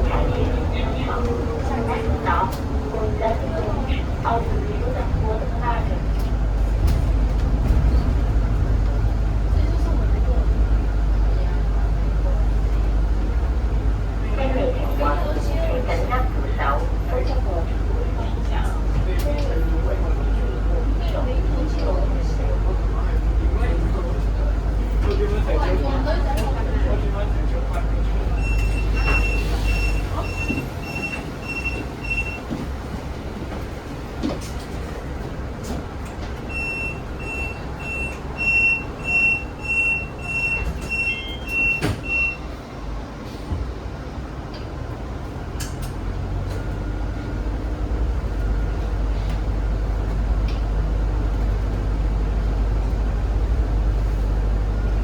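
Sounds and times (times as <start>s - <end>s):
bus engine running: 0.0s - 55.0s
high electronic warning beeps: 36.5s - 42.4s.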